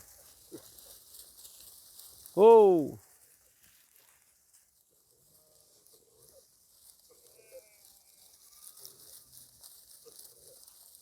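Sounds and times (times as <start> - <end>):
faint sheep bleats: 7.1 - 8.9.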